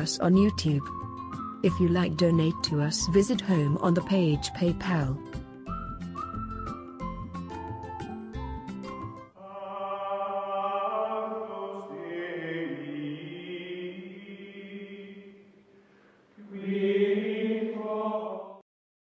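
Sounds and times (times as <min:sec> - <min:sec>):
chant-like choir voices: 0:09.4 - 0:15.5, 0:16.4 - 0:18.6.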